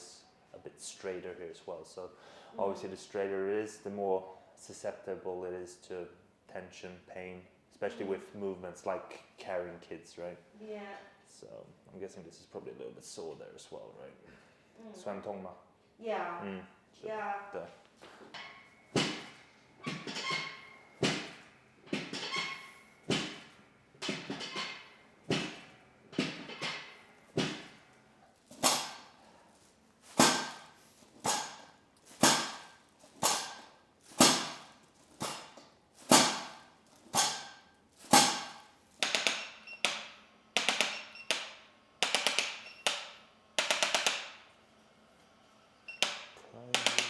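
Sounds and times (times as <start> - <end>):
sharp ringing knocks: 37.2 - 44.4, 46.0 - 47.0.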